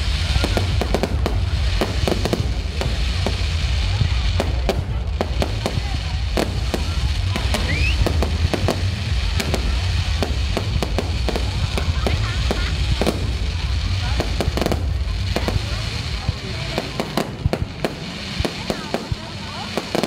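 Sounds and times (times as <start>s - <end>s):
low rumble: 0.0s - 19.2s
fireworks bursts: 0.0s - 20.0s
rising firework whistle: 6.4s - 11.6s.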